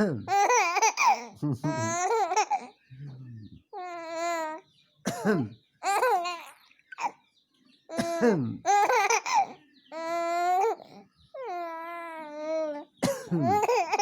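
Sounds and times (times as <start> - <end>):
baby laughing and babbling: 0.3 - 2.8, 3.8 - 4.6, 5.8 - 7.1, 7.9 - 14.0.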